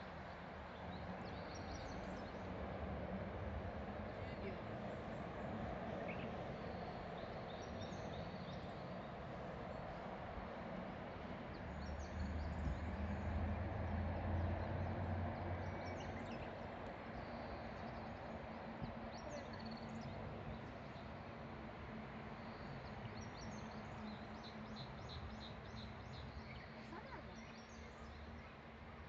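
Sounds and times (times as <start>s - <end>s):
small birds chirping: 15.6s - 21.2s, 22.4s - 28.6s.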